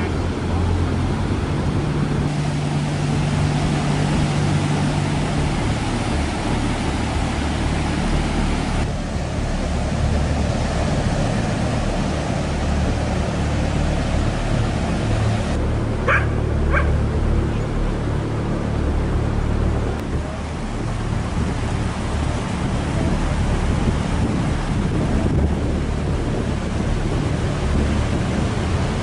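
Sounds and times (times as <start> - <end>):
wind rumbling on microphone: 0.0 - 29.0
dog barking: 16.1 - 17.0.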